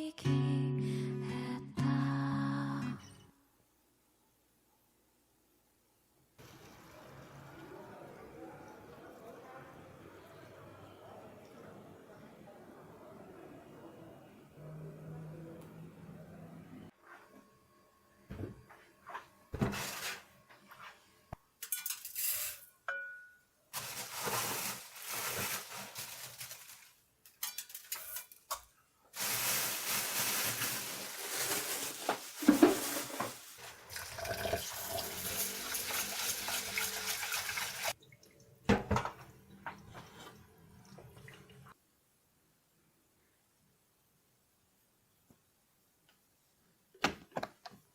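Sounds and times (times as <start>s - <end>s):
dishes and cutlery clinking: 21.6s - 23.4s, 27.3s - 28.7s.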